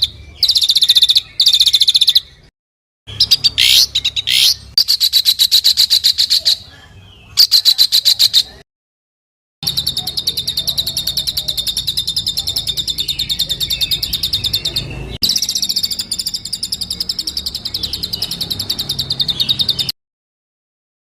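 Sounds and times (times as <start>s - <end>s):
songbird rapid trill: 0.0s - 2.4s, 3.1s - 8.6s, 9.6s - 19.9s.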